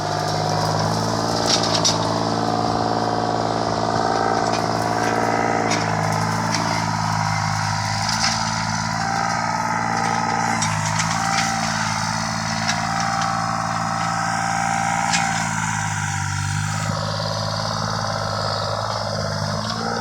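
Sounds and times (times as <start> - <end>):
diesel engine running: 0.0 - 20.0.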